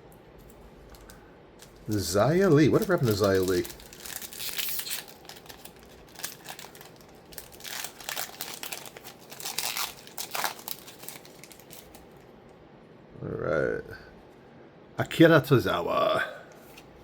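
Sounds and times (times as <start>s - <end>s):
foil wrapper crinkling: 0.9s - 12.3s.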